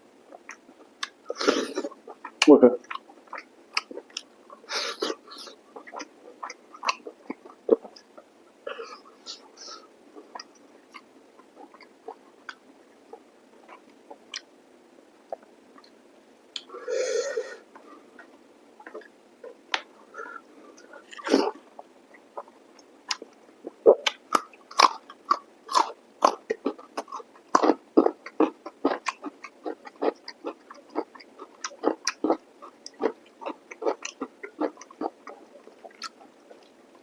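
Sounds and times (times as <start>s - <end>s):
rushing breath-like noise: 16.7s - 17.7s
wet lip and tongue clicks: 24.0s - 32.2s.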